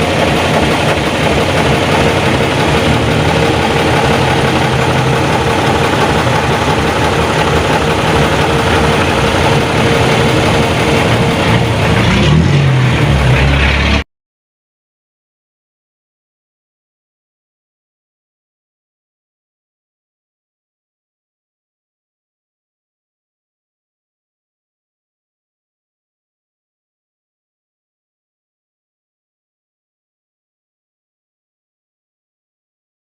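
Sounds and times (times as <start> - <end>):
diesel truck engine running: 0.0 - 14.0.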